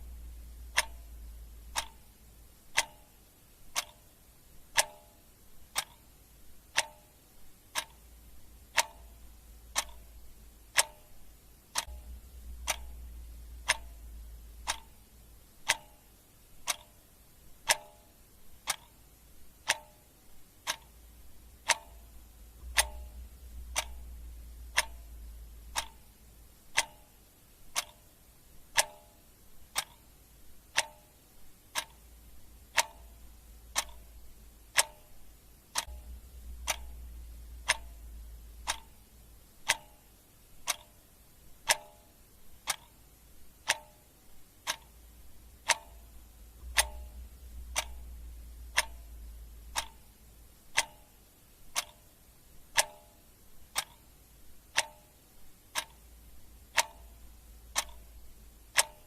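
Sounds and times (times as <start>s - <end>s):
faint deep rumble: 0.0s - 1.8s, 11.9s - 15.3s, 21.1s - 26.6s, 35.9s - 39.4s, 45.4s - 50.5s
clock ticking: 0.0s - 59.0s.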